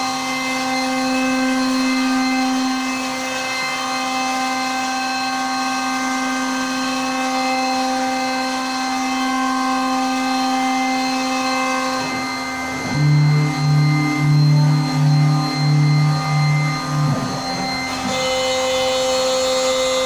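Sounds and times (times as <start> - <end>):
cnc router spindle whining: 0.0 - 20.0.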